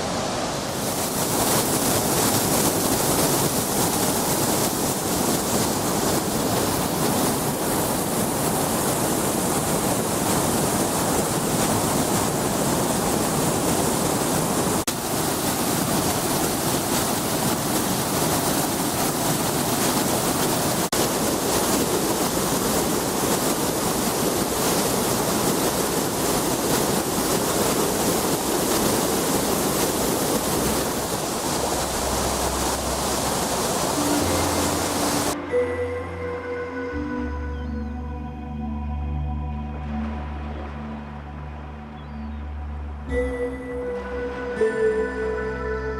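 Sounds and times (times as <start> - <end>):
waterfall rushing: 0.0 - 35.8.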